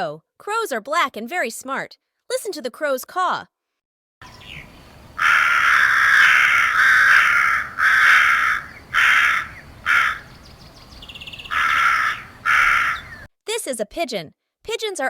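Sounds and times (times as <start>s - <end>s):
crow cawing: 4.5s - 10.4s, 11.1s - 13.3s.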